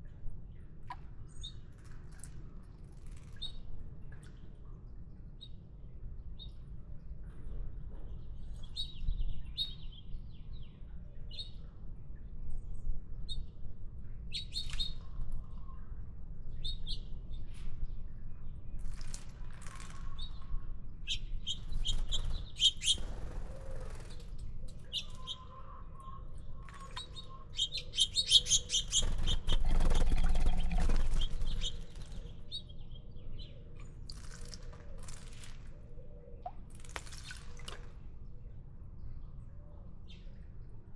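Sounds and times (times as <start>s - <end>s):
songbirds chirping: 21.2s - 34.1s.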